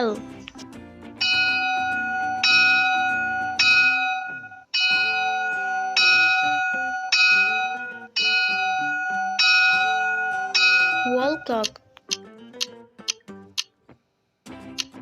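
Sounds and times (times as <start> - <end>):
bell ringing: 1.2 - 11.6.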